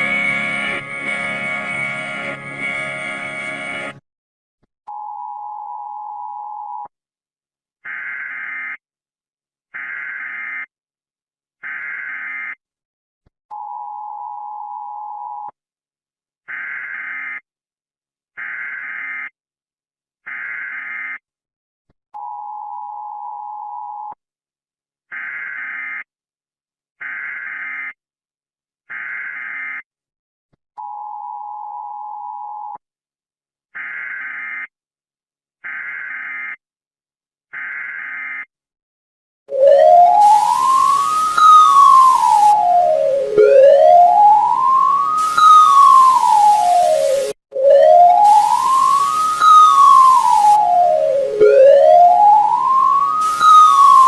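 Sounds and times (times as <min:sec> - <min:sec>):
vocoded emergency alert tones: 0:39.5 - 0:54.0.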